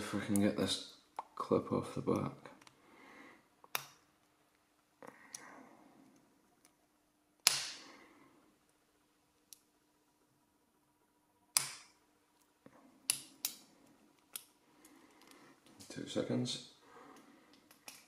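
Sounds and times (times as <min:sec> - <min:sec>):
loud snaps: 0:07.4 - 0:07.9.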